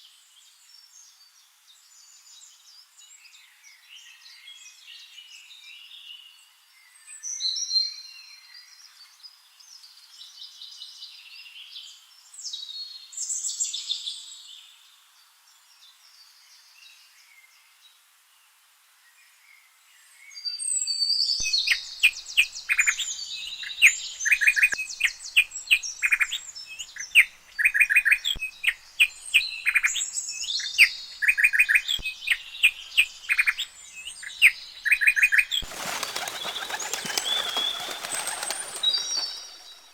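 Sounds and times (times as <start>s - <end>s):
faint high bird chirping: 20.4s - 39.9s
nightingale singing: 21.3s - 39.9s.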